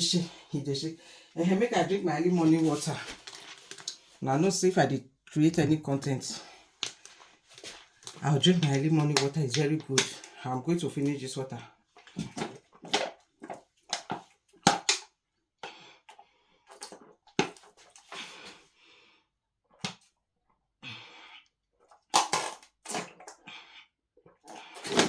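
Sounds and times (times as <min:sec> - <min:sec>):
breaths: 0:00.2 - 0:01.4, 0:18.0 - 0:19.3, 0:20.8 - 0:21.6
person gulping water: 0:11.9 - 0:18.6, 0:20.9 - 0:25.0.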